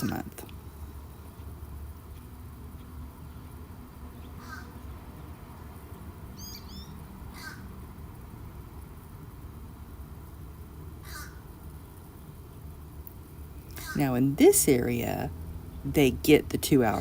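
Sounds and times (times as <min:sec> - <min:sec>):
low background rumble: 0:00.0 - 0:17.0
crow cawing: 0:04.4 - 0:04.8, 0:07.3 - 0:07.7, 0:11.0 - 0:11.4
small bird chirping: 0:06.3 - 0:07.7.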